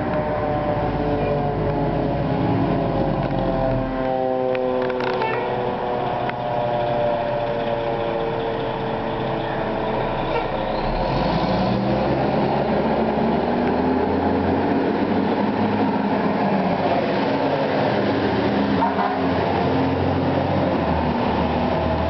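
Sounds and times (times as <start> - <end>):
mechanical siren winding down: 0.0 - 11.7
fire truck engine rumble: 0.0 - 22.0.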